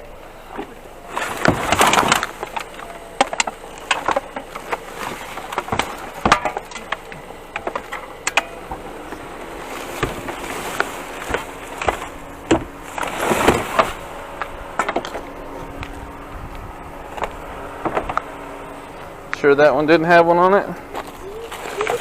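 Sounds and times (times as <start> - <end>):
dense clatter: 0.0 - 15.4.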